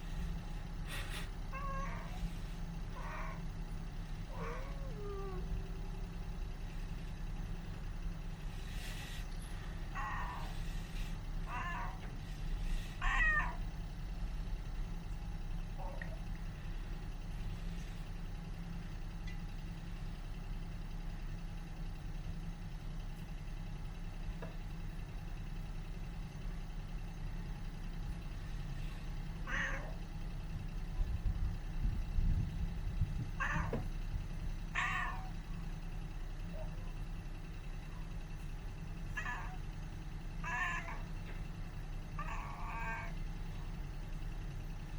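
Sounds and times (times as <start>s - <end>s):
steady low hum: 0.0s - 44.9s
cat meowing: 1.5s - 2.2s, 9.9s - 10.7s, 11.4s - 12.1s, 13.0s - 13.6s, 29.4s - 30.0s, 33.4s - 33.9s, 34.7s - 35.4s, 39.1s - 39.6s, 40.4s - 41.1s, 42.2s - 43.2s.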